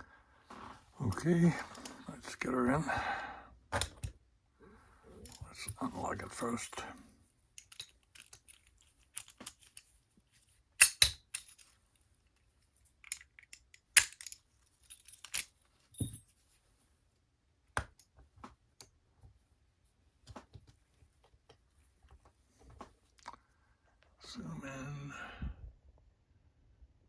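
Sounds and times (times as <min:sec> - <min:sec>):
padlock metal clicks and knocks: 0:07.6 - 0:09.9, 0:10.8 - 0:11.7, 0:13.0 - 0:16.2.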